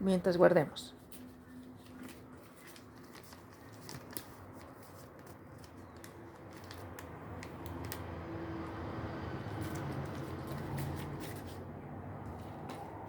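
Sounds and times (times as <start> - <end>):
packaging rustling: 1.1 - 8.1.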